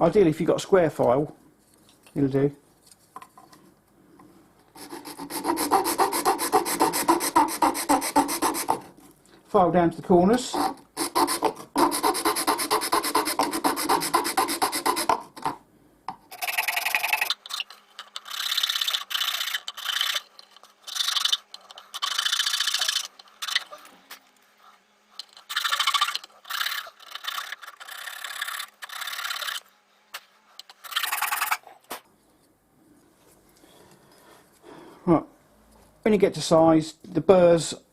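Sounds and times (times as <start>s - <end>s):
hand file rasping on metal: 4.8s - 8.9s, 10.4s - 15.6s.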